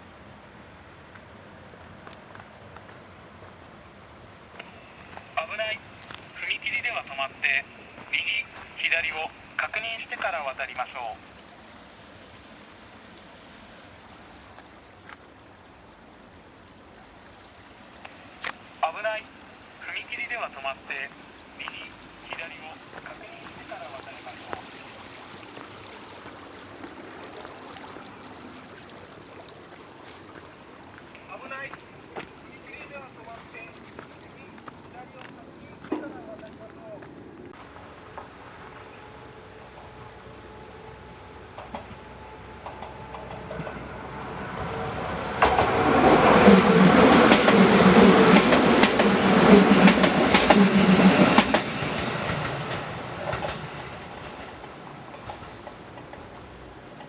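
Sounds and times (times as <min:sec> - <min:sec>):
electric train passing: 0:00.0 - 0:57.0
outdoor background hiss: 0:00.0 - 0:57.0
wheels clicking over rail joints: 0:41.4 - 0:57.0.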